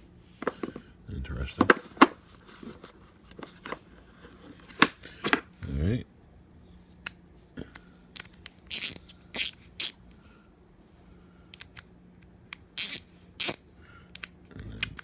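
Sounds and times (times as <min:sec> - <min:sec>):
plastic parts clicking and scraping: 0:00.4 - 0:05.5.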